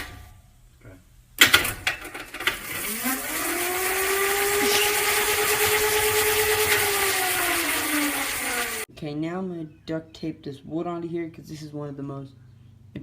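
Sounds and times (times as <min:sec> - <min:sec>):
electric motor whine: 0:02.6 - 0:08.9.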